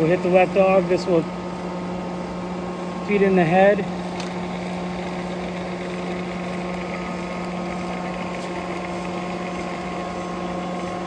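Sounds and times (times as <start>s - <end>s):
grinder humming: 2.8s - 11.0s.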